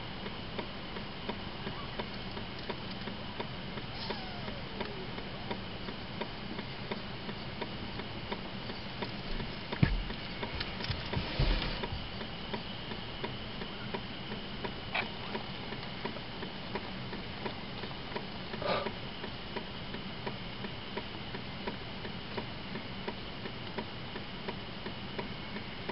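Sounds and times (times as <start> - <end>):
steady light ticking: 4.8 - 10.6
dull thumps: 9.7 - 12.1.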